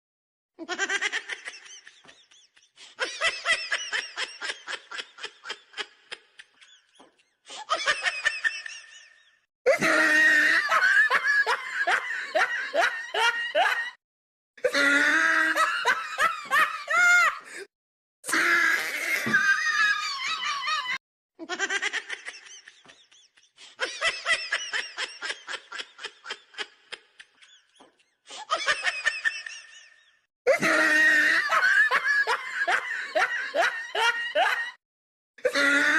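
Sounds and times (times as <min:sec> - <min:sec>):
person laughing: 0:19.2 - 0:34.8.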